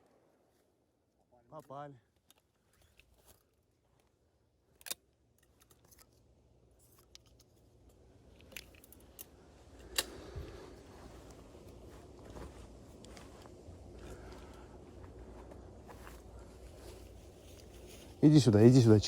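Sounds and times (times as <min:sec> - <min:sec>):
soft rustle: 0:08.4 - 0:19.0.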